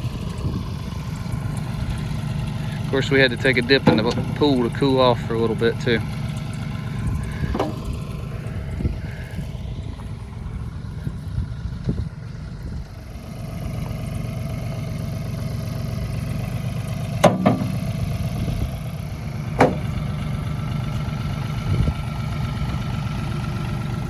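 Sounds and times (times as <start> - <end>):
engine idling: 0.0 - 24.0
dull knock: 17.2 - 17.8, 19.6 - 19.9
rocks clanging into metal bucket: 17.2 - 17.8.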